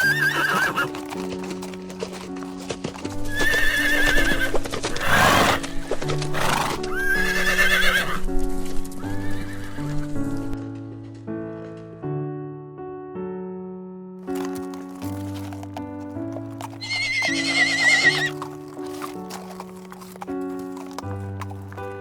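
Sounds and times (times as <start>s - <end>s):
horse whinnying: 0.0s - 1.7s, 3.2s - 8.3s, 9.0s - 10.0s, 16.4s - 21.8s
keyboard background music: 0.0s - 22.0s.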